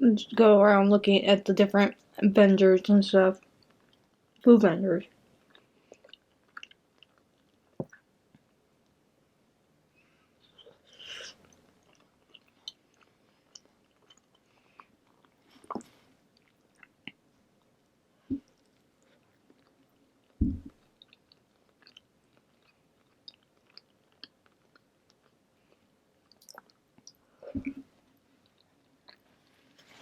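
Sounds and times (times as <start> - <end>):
person chewing food: 5.4 - 8.5, 10.4 - 30.0
dull thumps: 20.4 - 20.8.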